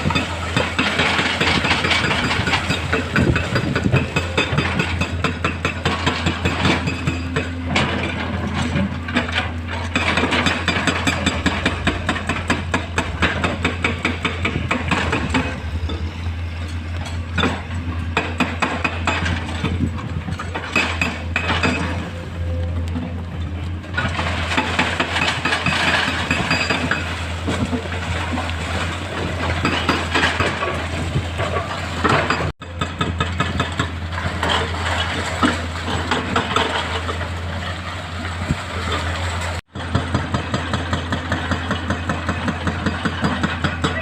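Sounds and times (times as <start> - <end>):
heavy machinery diesel engines: 0.0 - 44.0.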